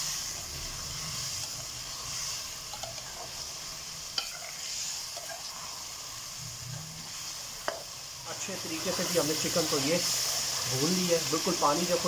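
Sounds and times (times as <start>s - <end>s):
chicken sizzling in oil: 0.0s - 12.0s
spoon stirring and scraping pot: 4.2s - 5.6s.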